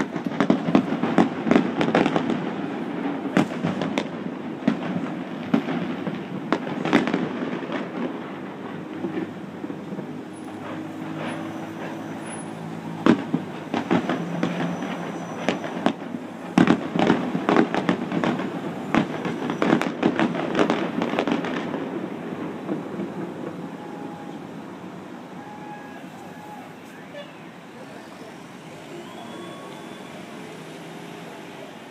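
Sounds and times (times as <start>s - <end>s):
fireworks bangs and crackles: 0.0s - 31.9s.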